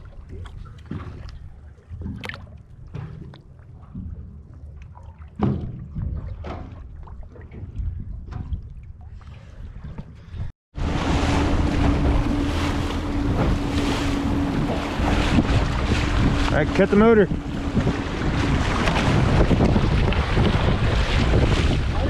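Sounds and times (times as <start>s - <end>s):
hull and water noise: 0.0s - 22.0s
low rumble: 0.0s - 22.0s
wind on microphone: 9.7s - 22.0s
outboard motor humming: 10.7s - 22.0s.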